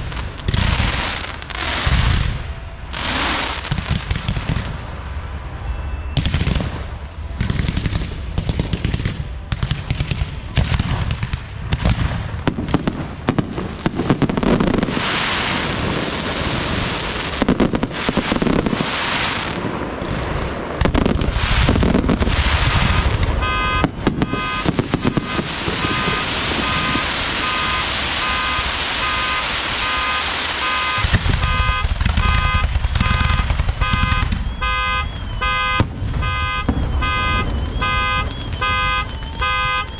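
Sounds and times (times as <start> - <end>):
fireworks bursting and crackling: 0.0 - 39.9
car alarm pulsed tone: 23.4 - 39.9.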